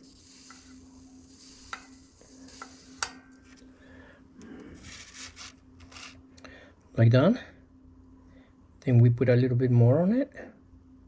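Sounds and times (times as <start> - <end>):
soldering iron tip scraping: 0.0 - 3.6, 4.7 - 6.2.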